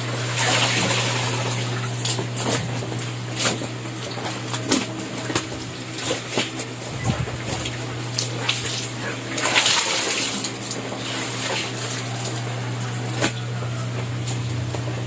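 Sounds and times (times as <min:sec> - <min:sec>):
steady low hum: 0:00.0 - 0:15.0
water splashing on a floor: 0:07.6 - 0:12.6.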